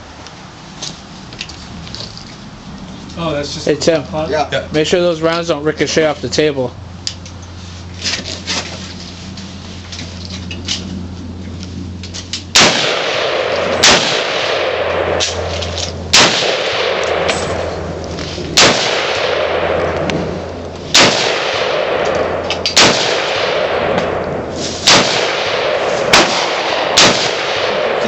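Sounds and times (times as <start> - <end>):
rifle shots echoing: 12.5 - 28.0.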